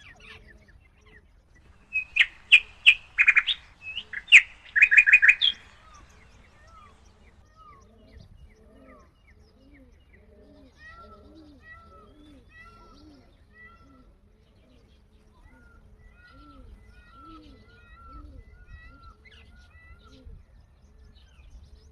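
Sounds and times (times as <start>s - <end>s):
small birds chirping: 0.0s - 21.9s
peafowl calling: 1.6s - 7.4s.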